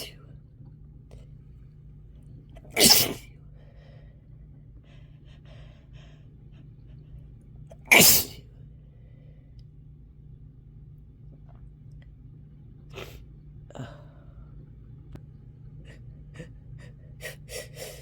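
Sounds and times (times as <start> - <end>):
sharp nose sniffs: 2.8 - 3.2.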